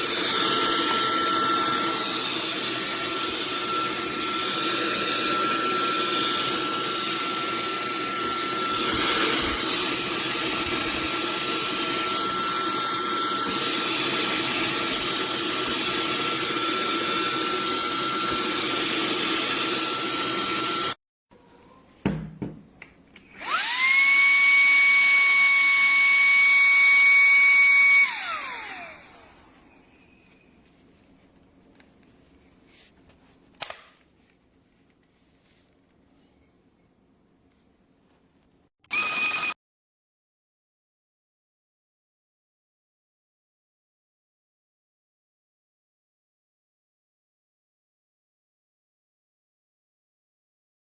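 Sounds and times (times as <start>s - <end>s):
handheld vacuum whining: 0.0s - 21.0s, 23.2s - 29.9s, 38.8s - 39.6s.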